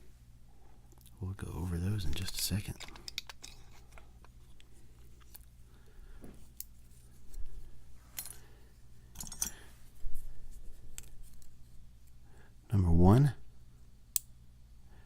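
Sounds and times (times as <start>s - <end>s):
metallic clicks and clinks: 2.4s - 4.0s, 9.1s - 9.6s.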